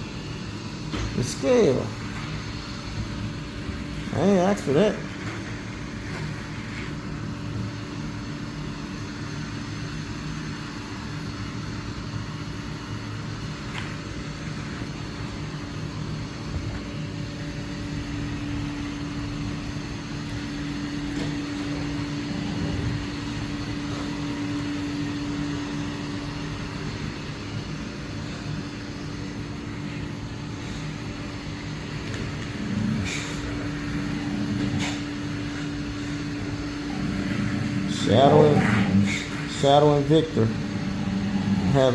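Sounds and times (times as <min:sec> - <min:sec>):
robot vacuum motor hum: 0:14.3 - 0:41.9.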